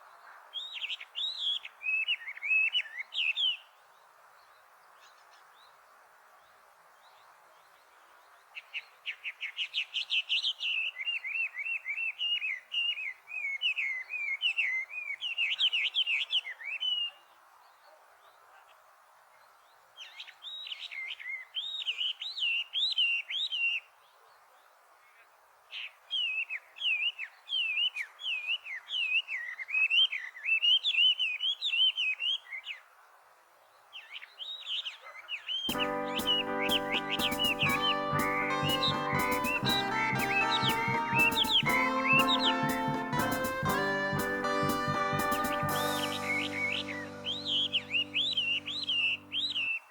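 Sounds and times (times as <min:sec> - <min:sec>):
bird singing whistled notes: 0:35.5 - 0:42.6, 0:45.8 - 0:49.9.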